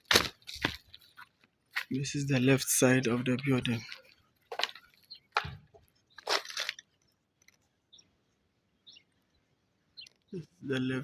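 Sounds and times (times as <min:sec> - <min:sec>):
crunching scuffs: 0:00.0 - 0:06.9.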